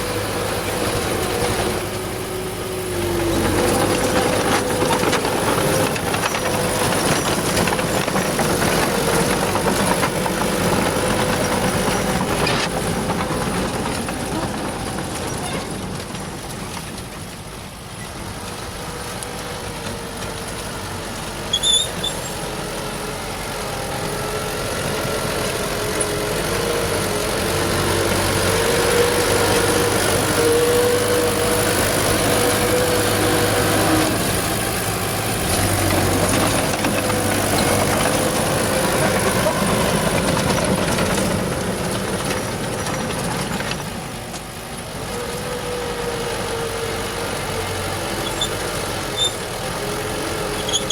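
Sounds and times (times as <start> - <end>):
bulldozer diesel engine running: 0.0 - 50.9
brief high squeak: 21.5 - 22.4, 50.6 - 50.9.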